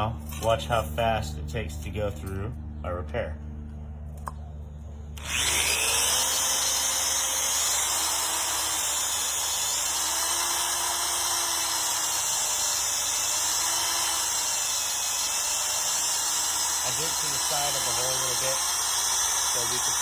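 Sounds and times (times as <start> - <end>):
electric drill boring metal: 5.2 - 20.0.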